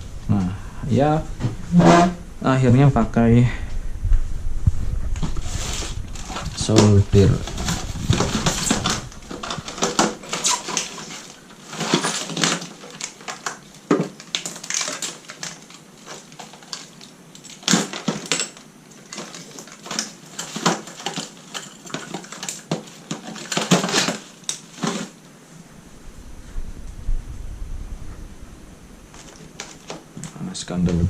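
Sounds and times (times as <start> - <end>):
small tools clattering on workbench: 5.2 - 25.2.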